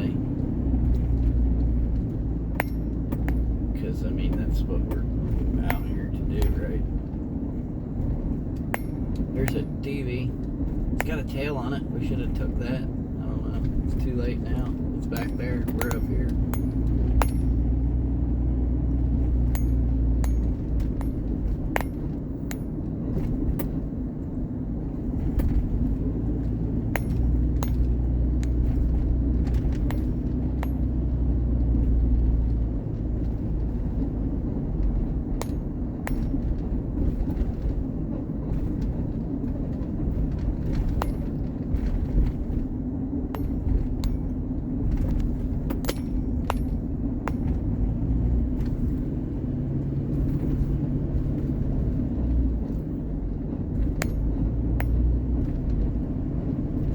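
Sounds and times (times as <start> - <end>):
car engine and road rumble: 0.0 - 56.9
loose things rattling: 18.7 - 56.9.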